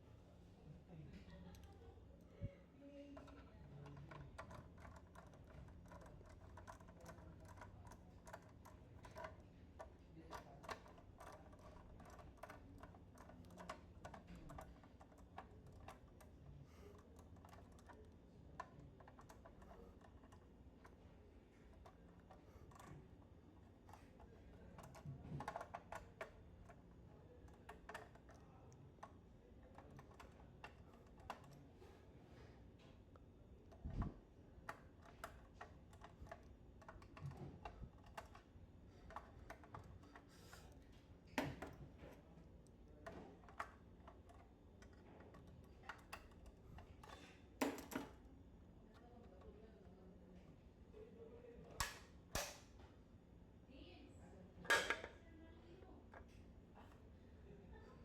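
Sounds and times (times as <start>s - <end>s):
light clicks and taps: 3.2s - 31.9s, 32.8s - 48.2s.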